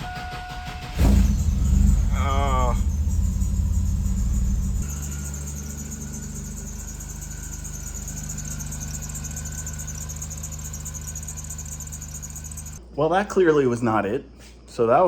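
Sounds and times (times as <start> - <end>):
car engine idling: 0.2 - 12.8
belt squealing: 1.0 - 12.8.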